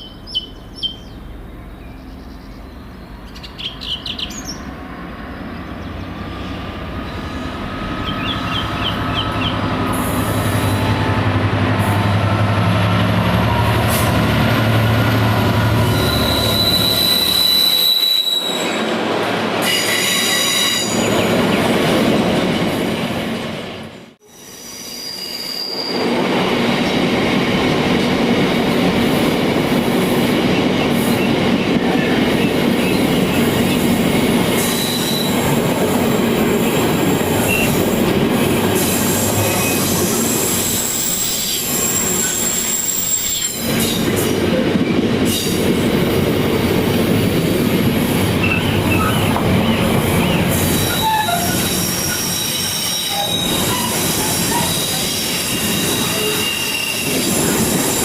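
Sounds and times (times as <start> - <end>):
freight train wagons rumbling: 4.2 - 24.2, 25.5 - 58.0
wheel squeals: 15.8 - 18.8, 38.8 - 44.0, 48.4 - 58.0.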